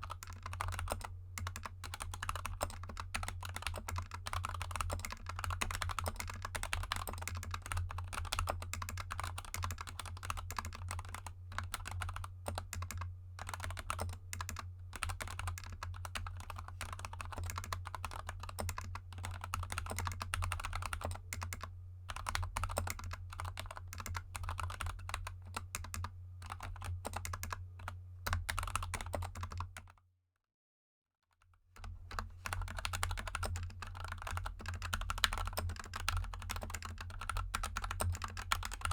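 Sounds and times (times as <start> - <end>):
low steady hum: 0.0 - 29.8
fast typing on mechanical keyboard: 0.0 - 30.0, 31.8 - 38.9.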